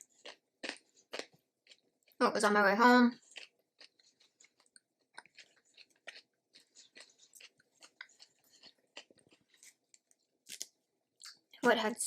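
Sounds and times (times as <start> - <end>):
close-up chewing: 0.0 - 2.2, 3.1 - 11.5.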